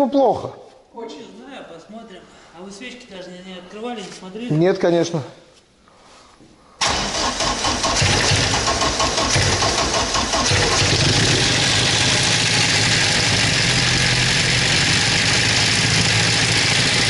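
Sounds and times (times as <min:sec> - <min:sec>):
car engine idling: 0:06.8 - 0:17.0.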